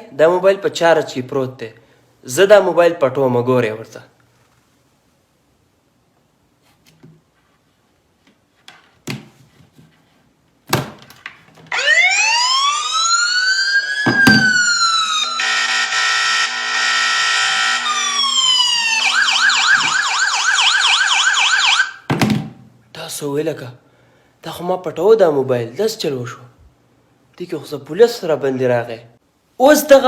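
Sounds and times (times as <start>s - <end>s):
phone alarm siren: 11.7s - 22.1s.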